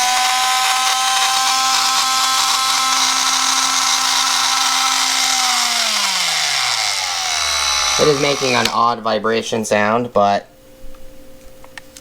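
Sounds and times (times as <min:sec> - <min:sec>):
oscillating multi-tool buzzing: 0:00.0 - 0:09.0.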